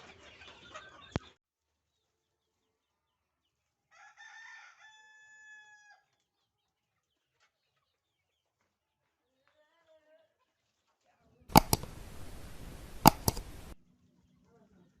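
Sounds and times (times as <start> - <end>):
rooster crowing: 3.9 - 5.9.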